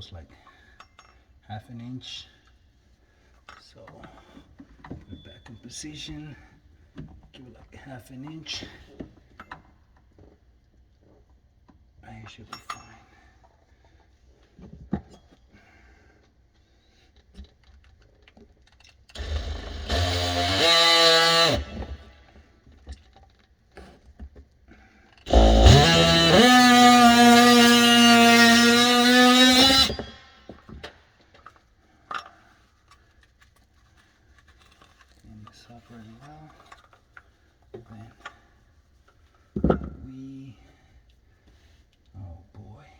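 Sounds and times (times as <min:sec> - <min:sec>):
power tool cutting pipe: 0:19.1 - 0:22.4, 0:25.3 - 0:30.9.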